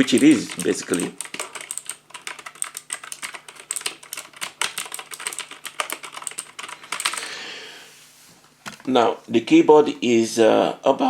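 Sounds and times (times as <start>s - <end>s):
mechanical keyboard key clicks: 0.0s - 7.2s.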